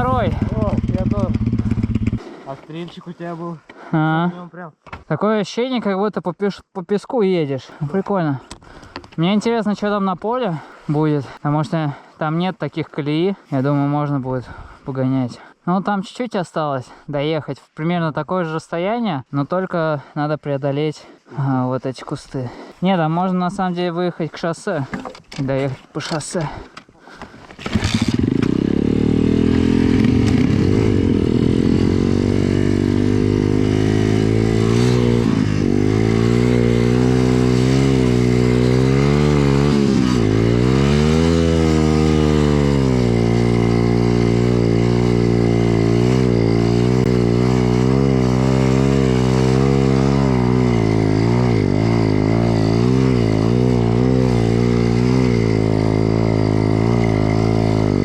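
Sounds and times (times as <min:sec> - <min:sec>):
pit bike engine revving: 0:00.0 - 0:02.4, 0:27.6 - 0:58.0.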